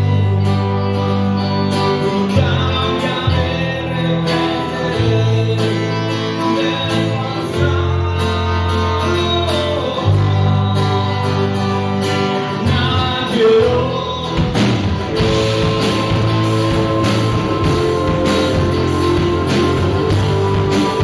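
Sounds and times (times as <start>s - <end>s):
guitars playing: 0.0s - 21.0s
sustained bass notes: 0.0s - 21.0s
drum strikes: 14.4s - 21.0s.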